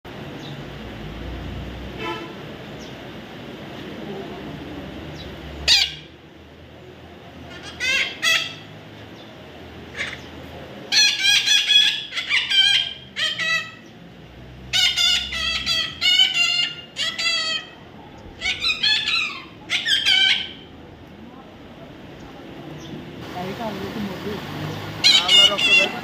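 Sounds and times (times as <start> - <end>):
parrot harsh calls: 5.6 - 6.1, 7.5 - 8.7, 9.9 - 10.3, 10.9 - 13.9, 14.7 - 20.7, 25.0 - 26.0.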